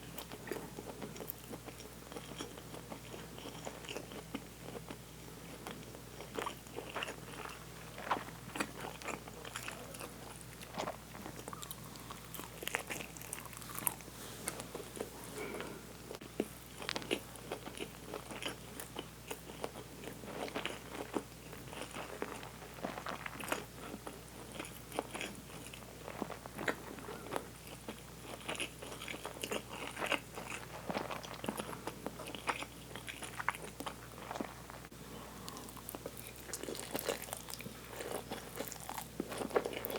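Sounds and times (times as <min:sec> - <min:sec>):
person biting and chewing: 0:11.2 - 0:15.1, 0:35.5 - 0:39.9.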